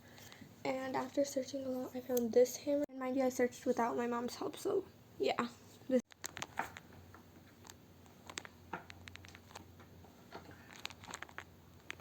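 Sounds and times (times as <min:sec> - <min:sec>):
faint small clicks and taps: 0:06.1 - 0:12.0.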